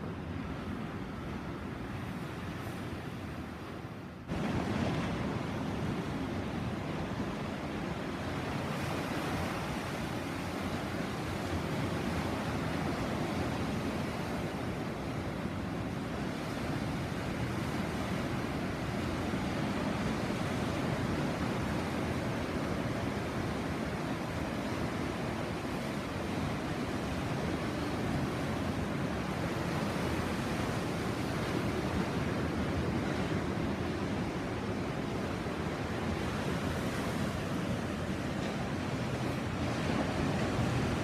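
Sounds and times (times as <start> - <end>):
sea waves breaking on shore: 0.0 - 41.0
wind: 0.0 - 41.0.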